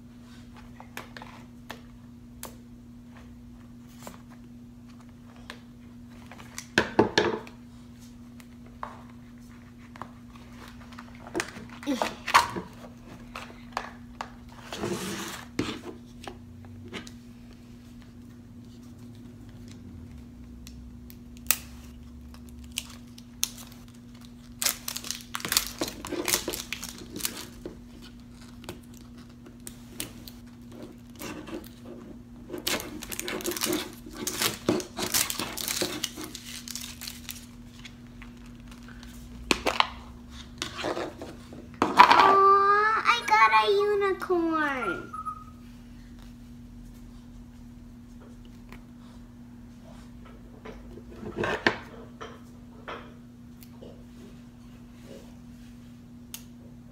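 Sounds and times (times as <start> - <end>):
packaging crinkling and tearing: 21.4 - 31.8, 32.4 - 39.9.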